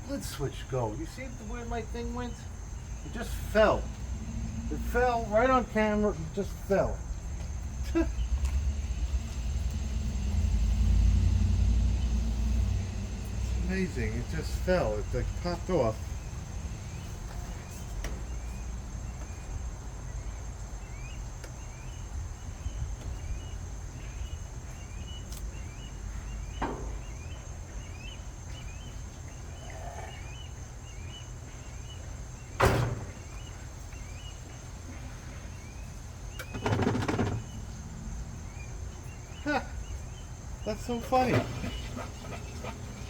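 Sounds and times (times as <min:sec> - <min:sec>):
washing machine humming: 0:00.0 - 0:17.6, 0:30.3 - 0:43.0
birds chirping: 0:00.0 - 0:43.0.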